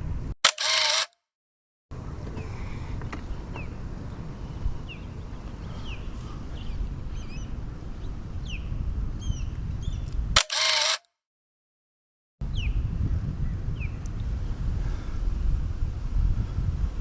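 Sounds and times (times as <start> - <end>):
wind rumbling on microphone: 2.0 - 10.4, 12.4 - 17.0
small birds chirping: 4.8 - 10.2.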